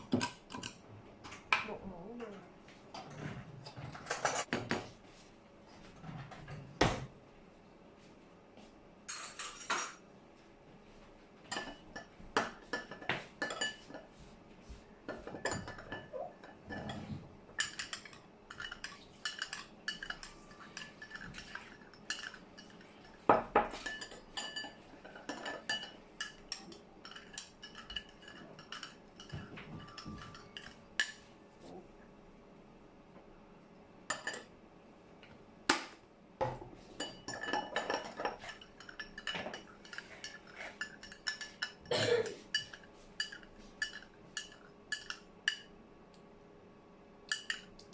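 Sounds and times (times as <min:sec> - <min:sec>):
spoon scraping a bowl: 0:15.2 - 0:31.2, 0:37.0 - 0:45.7.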